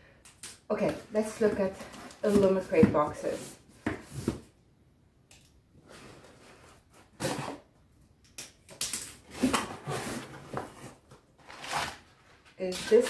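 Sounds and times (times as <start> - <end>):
packaging rustling and scraping: 9.2 - 13.0.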